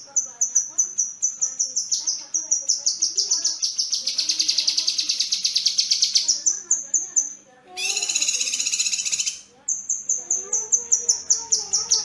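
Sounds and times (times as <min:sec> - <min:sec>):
songbird trilling high notes: 0:07.8 - 0:09.5.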